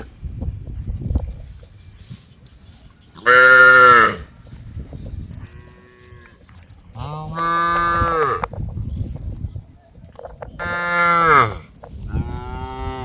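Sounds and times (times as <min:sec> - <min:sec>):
cows mooing: 0:07.0 - 0:08.5, 0:10.6 - 0:13.0.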